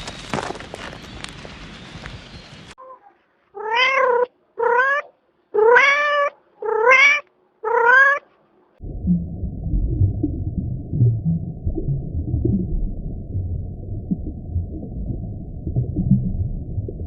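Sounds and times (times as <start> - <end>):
cat meowing: 3.6 - 8.3.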